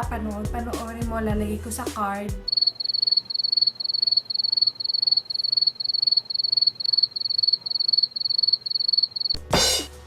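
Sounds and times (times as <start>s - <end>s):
cricket chirping: 2.5s - 9.4s.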